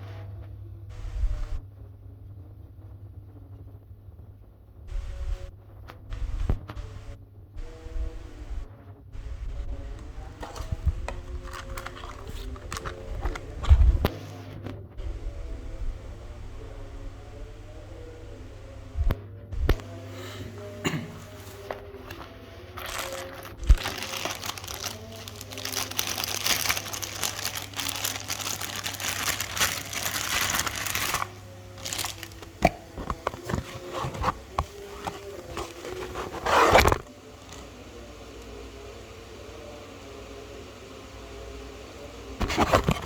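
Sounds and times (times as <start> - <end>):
steady low hum: 0.0 - 43.0
crinkling: 9.4 - 14.7, 20.8 - 37.8, 42.4 - 43.0.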